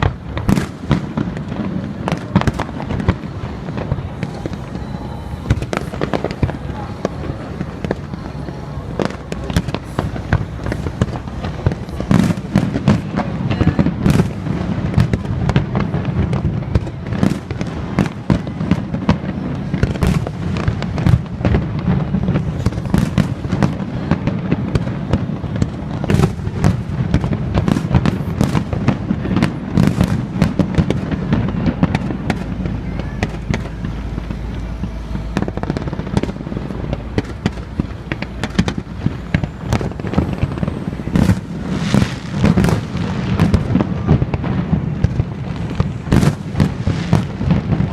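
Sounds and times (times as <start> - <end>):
low rumble: 0.0 - 14.9, 30.2 - 46.6
fireworks bangs and crackles: 0.0 - 47.9.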